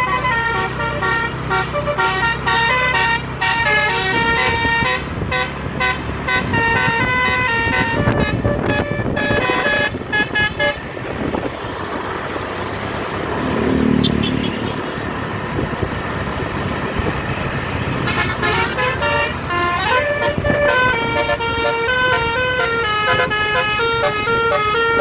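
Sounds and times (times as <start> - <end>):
multi-tone bus air horn melody: 0.0 - 11.4, 17.9 - 25.0
road and engine noise: 0.0 - 25.0.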